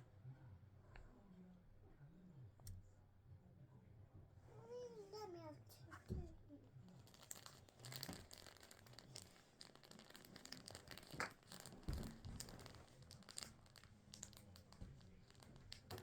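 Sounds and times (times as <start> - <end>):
faint rustling and crinkling: 4.2 - 16.0.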